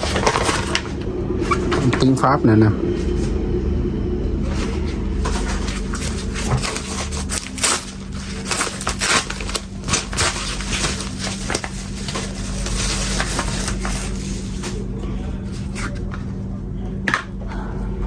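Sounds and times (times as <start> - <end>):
packaging crackling and tearing: 0.0 - 2.0, 4.5 - 14.9
steady low hum: 0.0 - 18.0.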